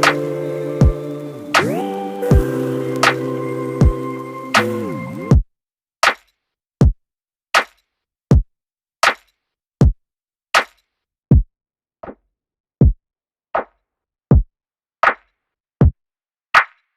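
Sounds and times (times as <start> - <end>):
drum machine beat: 0.0 - 5.5.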